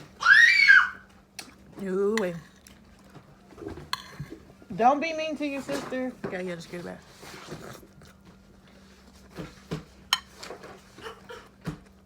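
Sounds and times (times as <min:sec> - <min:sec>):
chewing and mouth noises: 0:01.3 - 0:03.6, 0:07.3 - 0:09.3.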